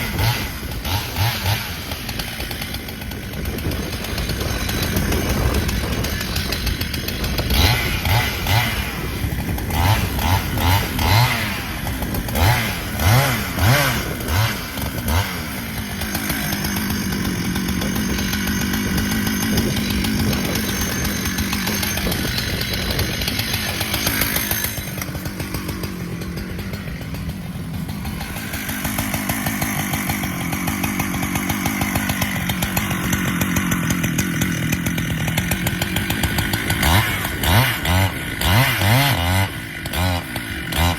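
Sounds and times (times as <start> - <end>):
chainsaw revving: 0.0 - 40.9.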